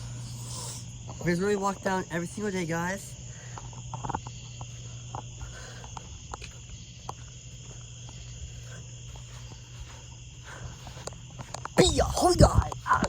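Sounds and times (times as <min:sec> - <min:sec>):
crickets chirring: 0:00.0 - 0:13.0
low steady hum: 0:00.0 - 0:13.0.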